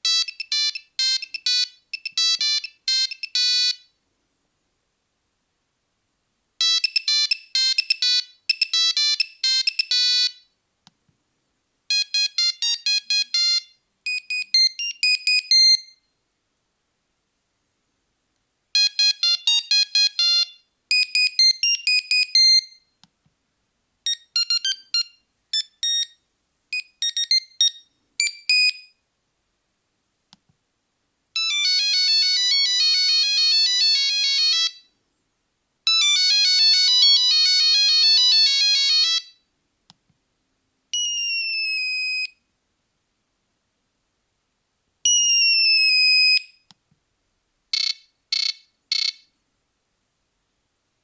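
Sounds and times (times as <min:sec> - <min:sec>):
mobile phone ringtone beeps: 0:00.0 - 0:03.9, 0:06.6 - 0:10.4, 0:11.9 - 0:16.0, 0:18.8 - 0:22.8, 0:24.1 - 0:26.2, 0:26.8 - 0:28.9, 0:31.4 - 0:34.9, 0:35.9 - 0:39.4, 0:47.8 - 0:49.2.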